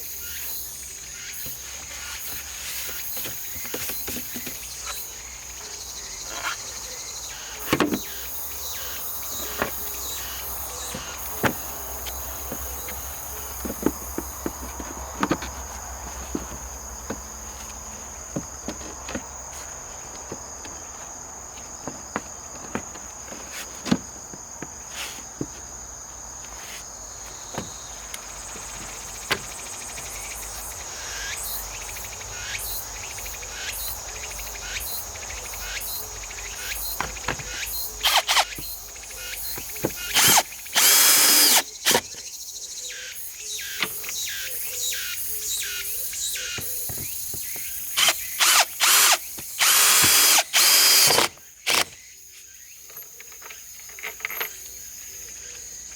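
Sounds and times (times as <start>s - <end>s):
cicadas buzzing: 0.0s - 55.9s
power drill bursts: 38.0s - 38.7s, 39.9s - 42.2s, 47.9s - 52.0s.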